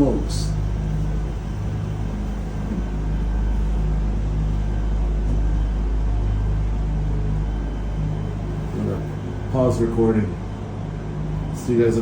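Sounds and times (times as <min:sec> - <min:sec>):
gondola cabin rumble: 0:00.0 - 0:12.0
gondola steady hum: 0:00.0 - 0:12.0.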